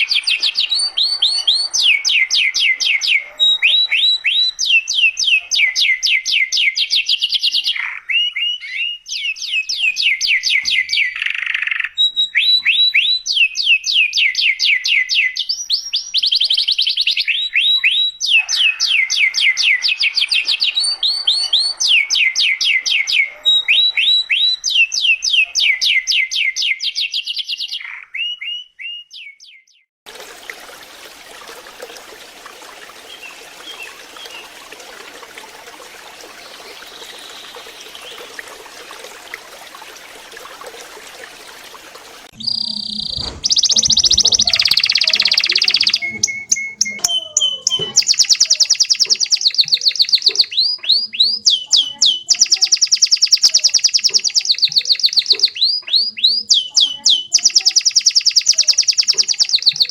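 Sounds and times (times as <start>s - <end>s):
canary singing trills: 0.0s - 29.9s, 42.3s - 59.9s.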